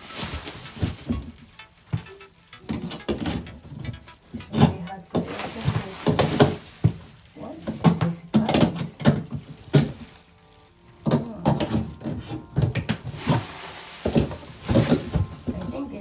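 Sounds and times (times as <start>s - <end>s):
hands working at cardboard box: 5.2s - 7.0s, 11.2s - 15.7s.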